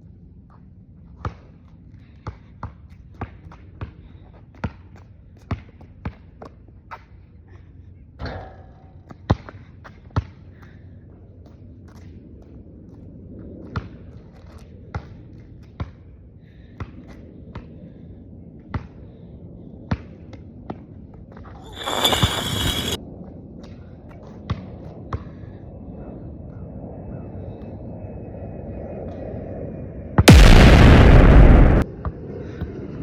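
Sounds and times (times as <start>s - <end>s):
loud burst of noise: 21.6s - 23.0s, 30.2s - 31.8s.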